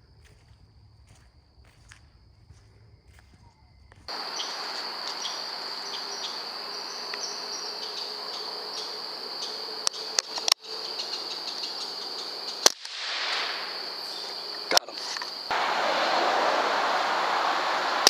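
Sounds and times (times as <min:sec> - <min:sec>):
crickets trilling: 0:00.0 - 0:18.0
outdoor background noise: 0:00.0 - 0:18.0
sharp clicks: 0:09.8 - 0:10.7, 0:12.5 - 0:13.6.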